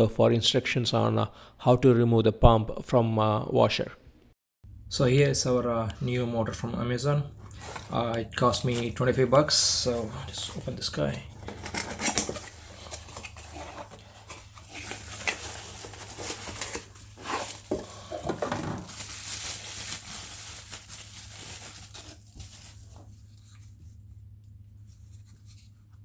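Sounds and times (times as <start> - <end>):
packaging tearing and crinkling: 7.3 - 23.6.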